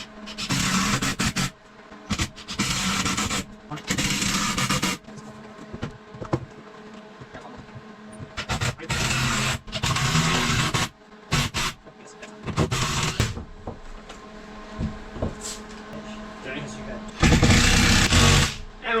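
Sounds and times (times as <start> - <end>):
power drill driving screws: 0.0 - 1.5, 2.1 - 5.0, 8.4 - 11.8, 12.6 - 13.4, 17.2 - 18.6.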